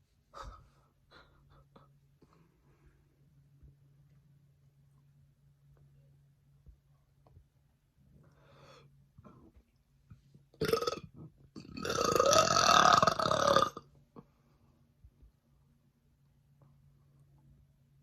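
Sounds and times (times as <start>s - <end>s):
woman burping: 10.6s - 13.8s.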